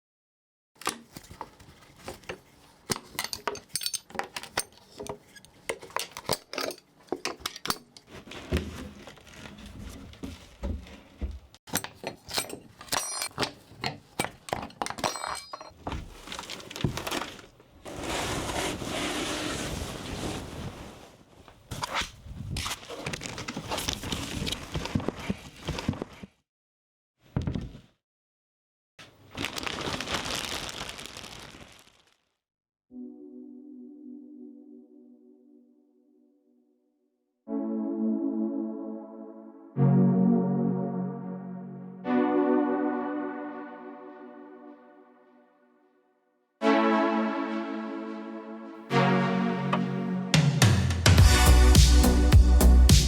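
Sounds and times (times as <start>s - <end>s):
small hard parts clicking and clinking: 2.9s - 8.1s, 11.7s - 17.2s.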